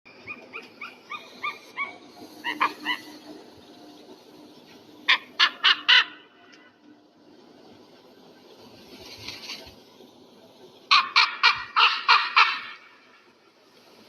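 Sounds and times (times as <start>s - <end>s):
eagle calling: 0.2s - 3.4s, 5.0s - 6.5s.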